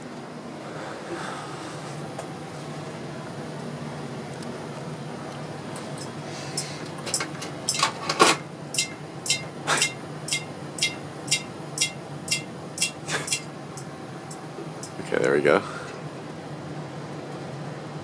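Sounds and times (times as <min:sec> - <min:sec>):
ceiling fan humming: 0:00.0 - 0:18.0
ringing ticks: 0:08.7 - 0:15.0.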